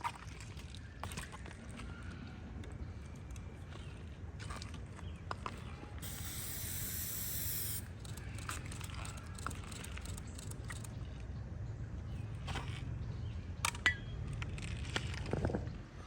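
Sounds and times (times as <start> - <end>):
sharp hiss: 6.0 - 7.9
small clicks: 6.0 - 10.9.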